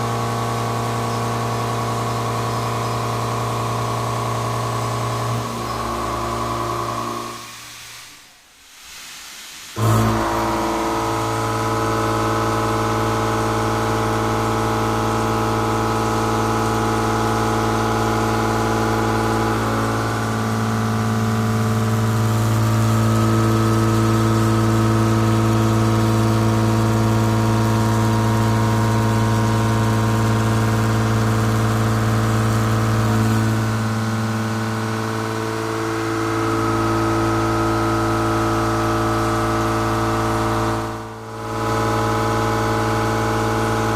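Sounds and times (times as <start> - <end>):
milling machine cutting metal: 9.8 - 43.9.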